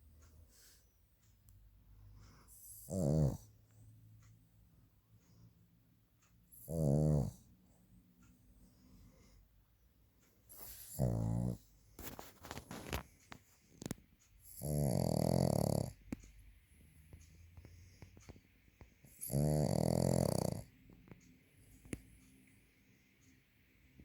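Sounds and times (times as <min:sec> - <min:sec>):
dog snoring: 0:02.2 - 0:03.8, 0:06.4 - 0:07.8, 0:10.5 - 0:13.1, 0:13.7 - 0:16.3, 0:17.0 - 0:22.2.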